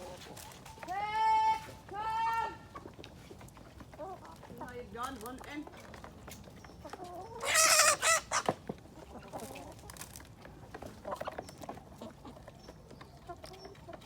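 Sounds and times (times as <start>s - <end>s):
poultry bird honking: 7.4s - 8.4s.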